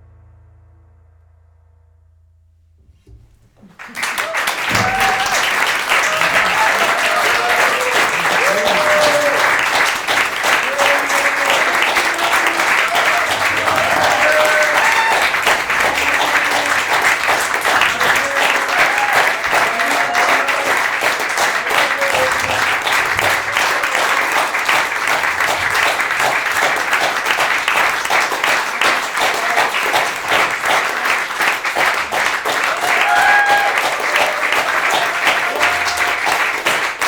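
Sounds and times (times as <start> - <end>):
audience applauding: 3.0 - 37.0
crowd calling out: 3.6 - 37.0.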